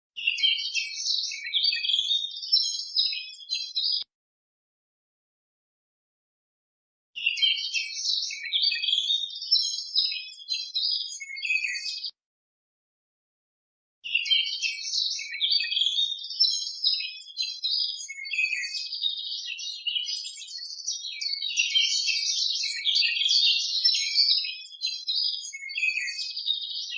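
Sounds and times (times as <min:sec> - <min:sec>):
small birds twittering: 0:00.2 - 0:04.1, 0:07.2 - 0:12.1, 0:14.0 - 0:26.9.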